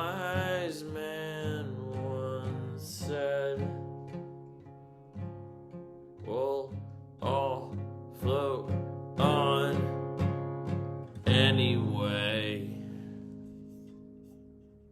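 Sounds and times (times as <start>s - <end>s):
person singing: 0.0s - 4.0s, 6.2s - 10.2s, 11.2s - 13.0s
acoustic guitar strumming: 0.0s - 14.9s.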